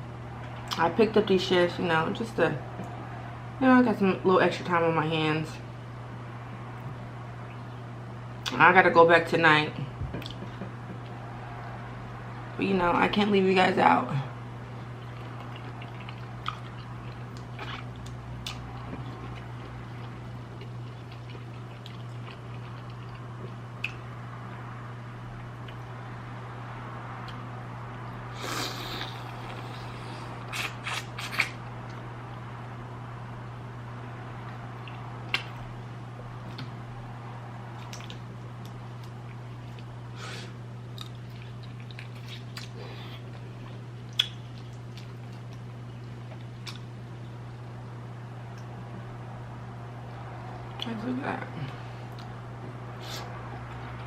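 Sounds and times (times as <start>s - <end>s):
steady low hum: 0.0s - 54.0s
chewing and mouth clicks: 14.8s - 24.1s, 28.8s - 32.1s, 34.4s - 35.7s, 37.7s - 40.0s, 40.9s - 46.9s, 52.1s - 52.4s.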